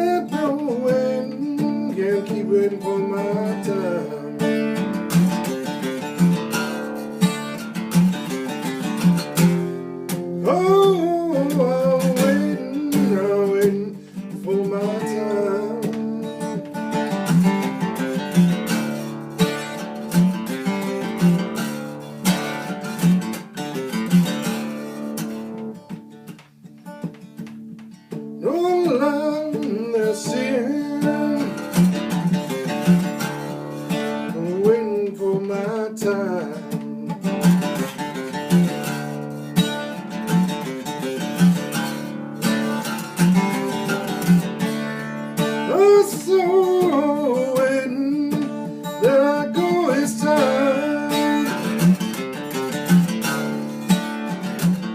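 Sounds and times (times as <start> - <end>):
person singing: 0.0 - 4.9, 10.1 - 17.9, 28.4 - 33.1, 33.8 - 37.9, 45.4 - 52.3
acoustic guitar strumming blues: 0.0 - 54.9.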